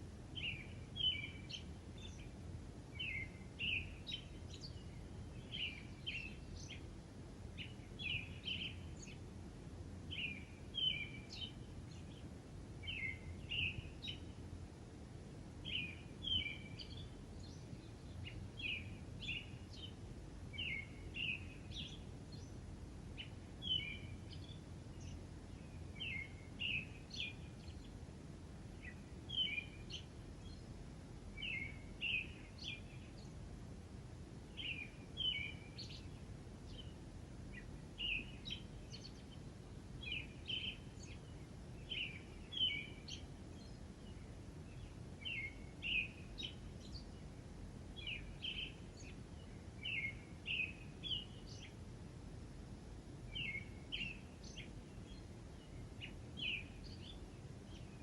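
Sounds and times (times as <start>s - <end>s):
bird chirping: 0.3s - 6.9s, 7.6s - 9.2s, 10.1s - 14.4s, 15.6s - 22.6s, 23.2s - 28.0s, 28.7s - 30.7s, 31.4s - 33.4s, 34.5s - 47.3s, 48.0s - 51.8s, 53.3s - 58.0s.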